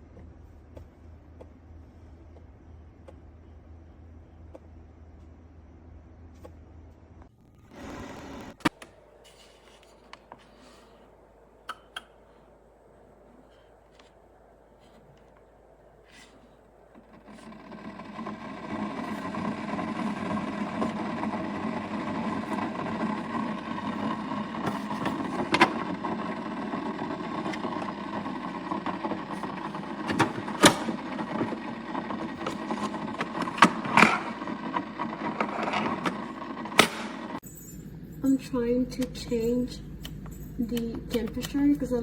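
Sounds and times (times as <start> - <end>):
coffee maker running: 7.3 - 9.8, 16.1 - 42.0.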